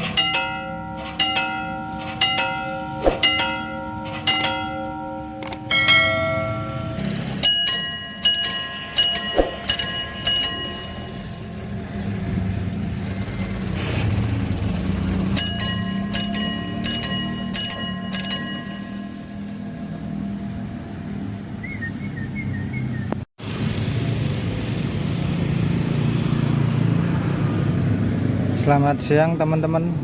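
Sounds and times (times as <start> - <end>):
level crossing bell strikes: 0.0 - 12.2, 15.2 - 20.7.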